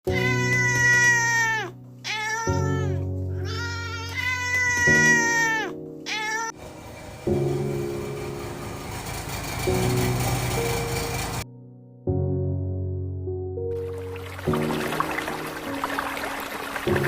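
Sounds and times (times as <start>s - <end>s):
cat-like meows: 0.1s - 6.6s
music with slow sustained chords: 1.6s - 17.0s.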